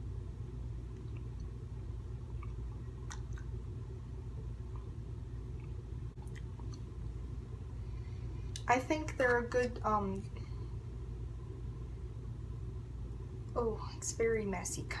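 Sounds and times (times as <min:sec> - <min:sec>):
steady low hum: 0:00.0 - 0:15.0
person chewing: 0:02.3 - 0:03.7, 0:04.7 - 0:07.0
wet mouth clicks: 0:02.4 - 0:03.6.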